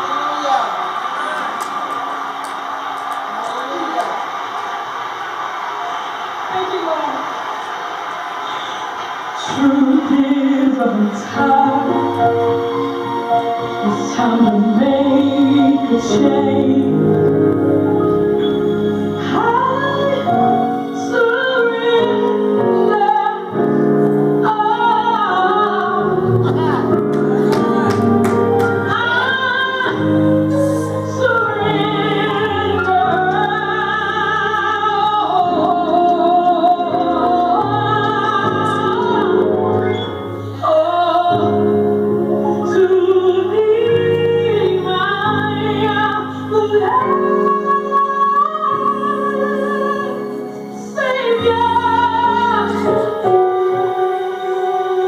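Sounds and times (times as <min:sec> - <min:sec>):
piano accompaniment: 0:08.6 - 0:55.0
woman singing gospel: 0:09.4 - 0:17.3, 0:19.2 - 0:23.8, 0:24.4 - 0:39.6, 0:40.5 - 0:55.0.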